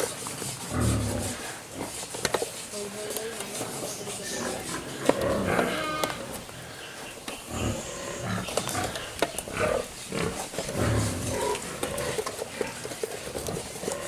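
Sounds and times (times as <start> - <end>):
farm animals calling: 3.8 - 14.0.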